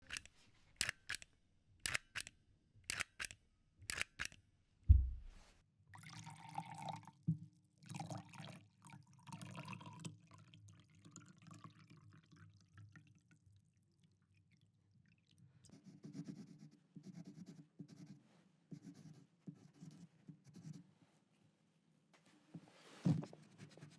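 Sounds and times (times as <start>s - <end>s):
heavy low thump: 4.9s - 5.4s.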